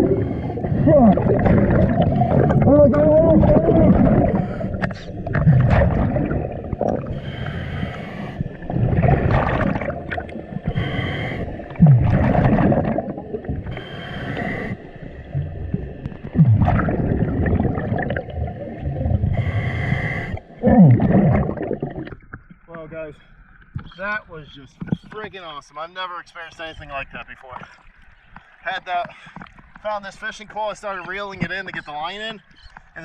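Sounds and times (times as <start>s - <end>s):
regulator hissing inhale: 0.0s - 0.8s, 4.3s - 5.1s, 7.0s - 8.7s, 10.6s - 11.8s, 13.7s - 15.4s, 19.2s - 20.6s
gurgling exhaled bubbles: 0.0s - 22.7s.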